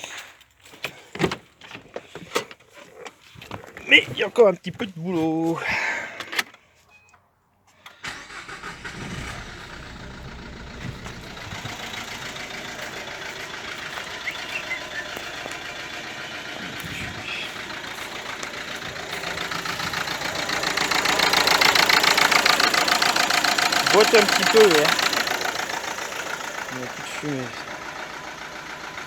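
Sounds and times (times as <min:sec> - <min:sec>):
diesel engine idling clatter: 0:08.0 - 0:29.0.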